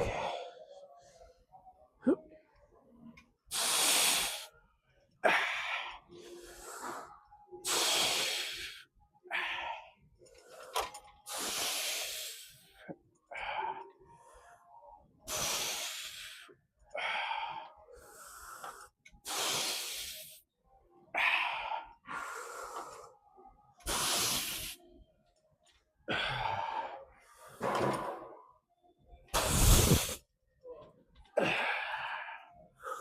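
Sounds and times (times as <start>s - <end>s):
man breathing hard: 0.0s - 0.7s, 5.2s - 14.6s, 26.1s - 27.6s, 31.3s - 33.0s.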